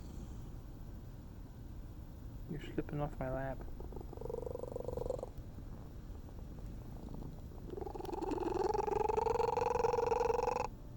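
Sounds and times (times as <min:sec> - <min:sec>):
cat purring: 0:03.3 - 0:10.7.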